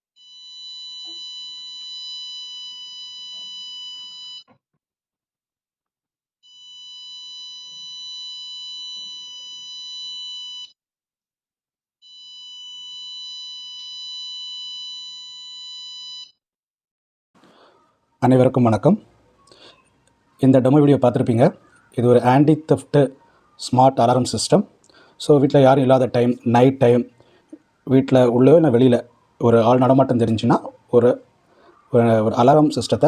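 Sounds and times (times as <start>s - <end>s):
shrill buzzer alarm tone: 0.2s - 4.5s, 6.4s - 10.8s, 12.0s - 16.4s.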